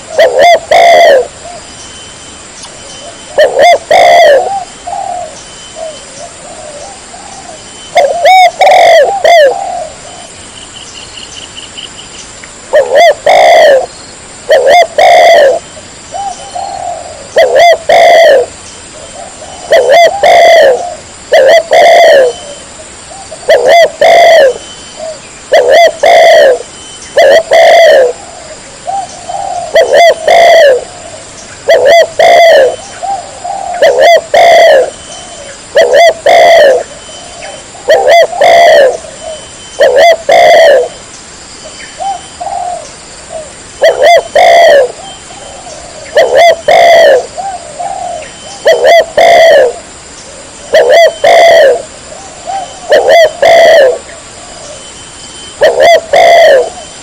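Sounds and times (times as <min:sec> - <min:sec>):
dove cooing: 0:00.0 - 0:01.7, 0:03.0 - 0:10.4, 0:12.7 - 0:41.0, 0:42.0 - 0:57.0.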